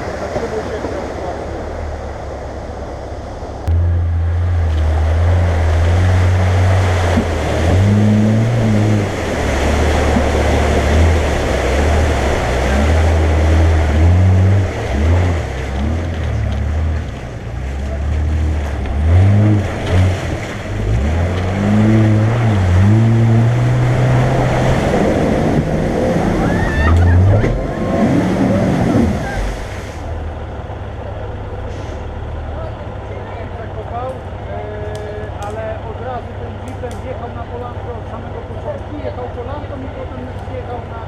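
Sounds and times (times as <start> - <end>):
steady rushing noise: 0.0 - 30.6
car engine revving: 3.5 - 30.3.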